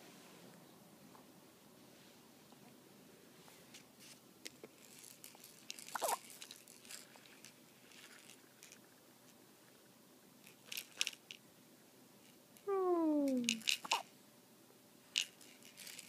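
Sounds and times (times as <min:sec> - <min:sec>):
baby hiccup with squeak: 0:13.8 - 0:14.0.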